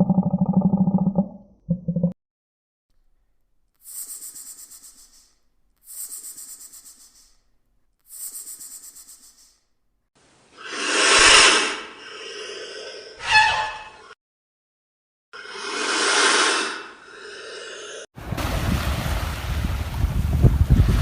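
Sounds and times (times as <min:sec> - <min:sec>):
vulture hissing: 0:03.8 - 0:07.4, 0:08.1 - 0:09.6, 0:10.6 - 0:13.2, 0:15.4 - 0:18.1.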